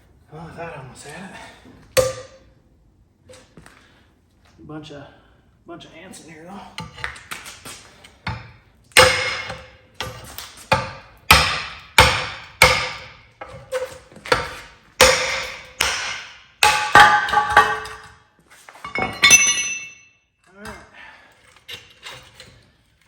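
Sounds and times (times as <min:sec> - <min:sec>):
hammer striking metal: 0:02.0 - 0:02.5, 0:08.3 - 0:13.2, 0:15.0 - 0:18.1, 0:18.9 - 0:20.2.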